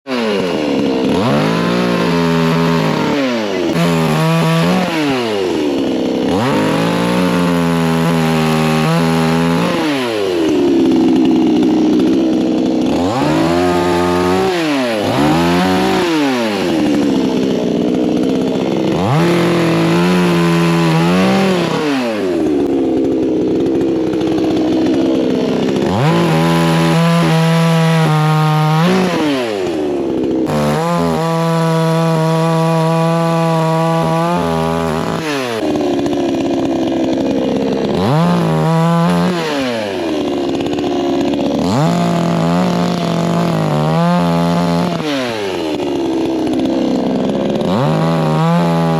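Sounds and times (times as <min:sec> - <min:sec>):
chainsaw revving cutting wood: 0:00.0 - 0:48.9.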